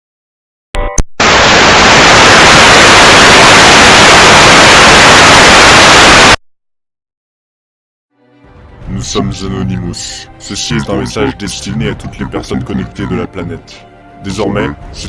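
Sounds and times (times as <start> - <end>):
harsh static hiss: 1.2 - 6.4.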